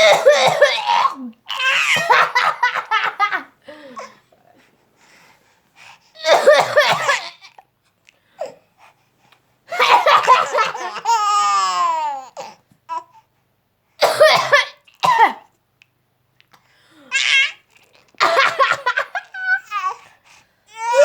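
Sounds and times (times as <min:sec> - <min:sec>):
child coughing: 0:00.0 - 0:02.9, 0:06.2 - 0:07.4, 0:09.8 - 0:11.2, 0:14.0 - 0:15.5, 0:18.2 - 0:19.2
baby laughing: 0:09.7 - 0:12.5, 0:18.2 - 0:20.0.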